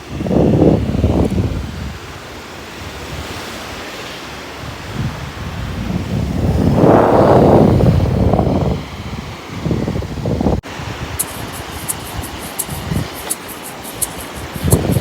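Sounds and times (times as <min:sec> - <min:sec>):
wind buffeting microphone: 0:00.0 - 0:02.3, 0:04.6 - 0:15.0
sea waves washing up beach: 0:10.7 - 0:15.0.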